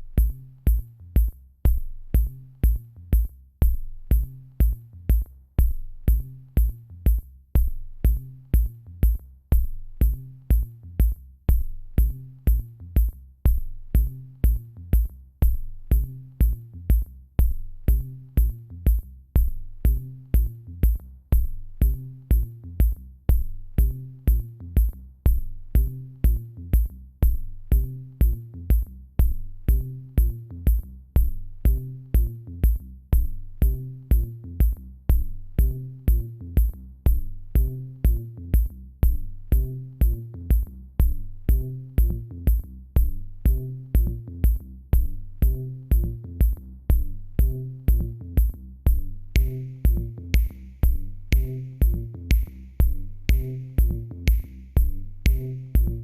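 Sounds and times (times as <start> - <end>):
drum-machine beat: 0.0 - 56.0
electronic instrumental music: 49.4 - 56.0.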